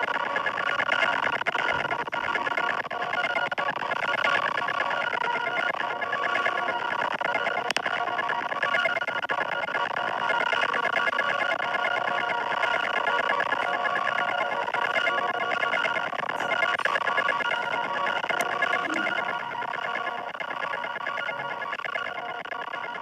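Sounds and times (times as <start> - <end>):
buzzy fluttering electronic tone: 13.0 - 23.0.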